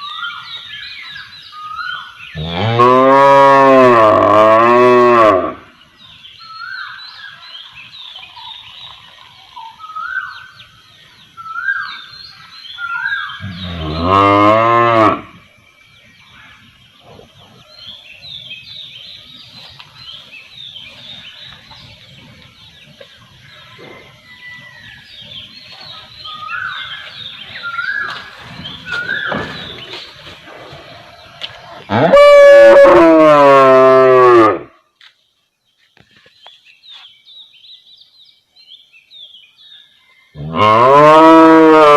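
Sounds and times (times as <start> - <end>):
cow mooing: 2.4 - 5.6, 13.4 - 15.3, 31.8 - 34.7, 40.4 - 41.9.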